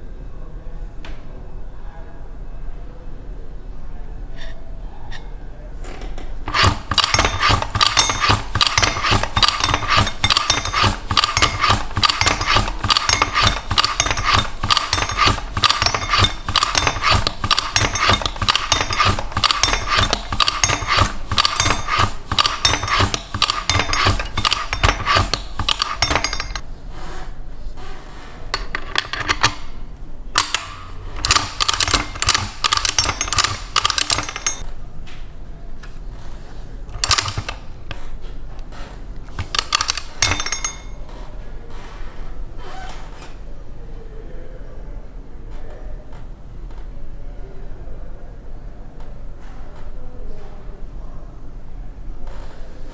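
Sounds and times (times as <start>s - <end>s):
letterpress metallic clicks and clinks: 6.5s - 26.6s, 28.6s - 29.7s, 30.4s - 34.7s, 36.9s - 37.6s, 39.3s - 41.2s.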